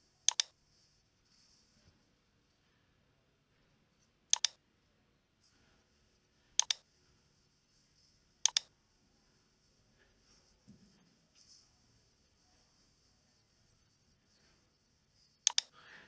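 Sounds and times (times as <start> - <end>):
computer mouse double clicks: 0.3 - 0.5, 4.3 - 4.6, 6.6 - 6.8, 8.4 - 8.7, 15.4 - 15.7.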